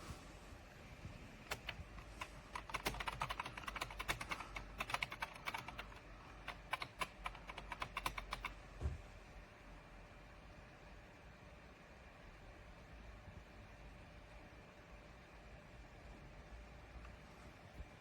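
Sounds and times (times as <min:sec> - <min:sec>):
computer keyboard key clicks: 0:01.5 - 0:08.5.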